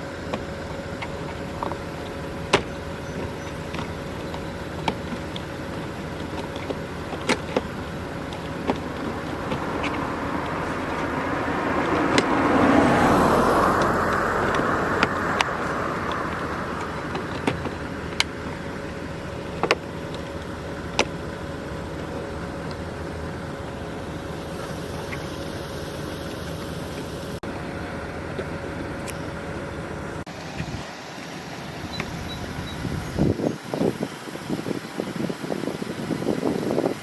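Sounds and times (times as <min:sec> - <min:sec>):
car passing: 0:07.6 - 0:19.4.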